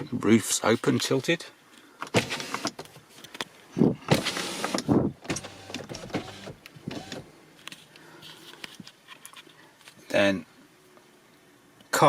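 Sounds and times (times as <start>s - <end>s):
power window motors whirring: 4.1s - 7.3s.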